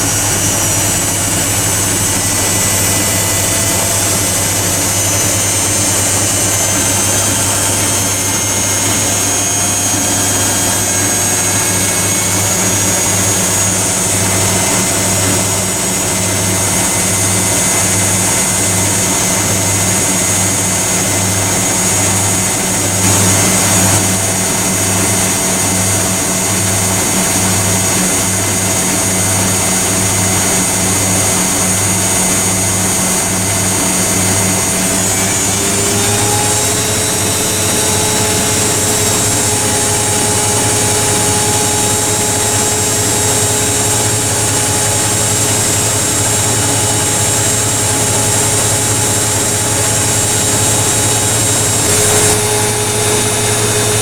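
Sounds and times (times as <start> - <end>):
washing machine and dryer hum: 0.0 - 54.0.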